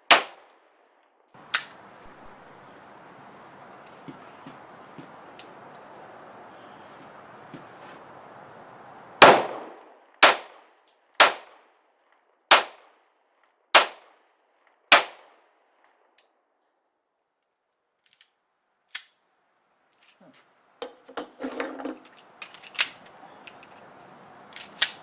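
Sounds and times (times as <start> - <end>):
pistol shots: 0.0 - 0.5, 9.2 - 10.6, 11.2 - 11.6, 12.5 - 12.9, 13.8 - 14.2, 14.9 - 15.4.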